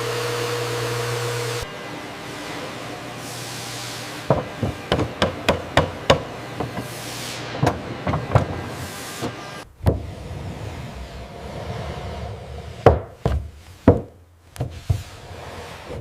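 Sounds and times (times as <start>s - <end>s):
hammer knocks: 4.3s - 6.9s, 7.6s - 8.7s, 12.8s - 15.0s.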